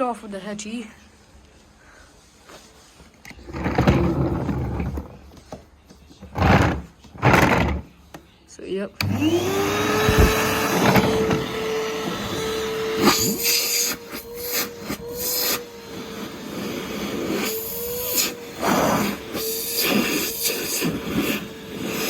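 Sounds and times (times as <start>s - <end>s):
vacuum cleaner motor whine: 6.3s - 7.9s, 9.0s - 22.0s.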